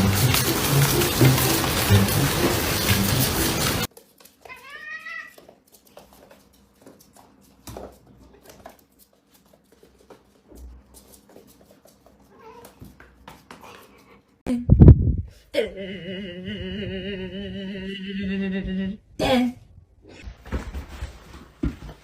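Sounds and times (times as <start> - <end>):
cat meowing: 4.5 - 5.4, 12.4 - 12.8.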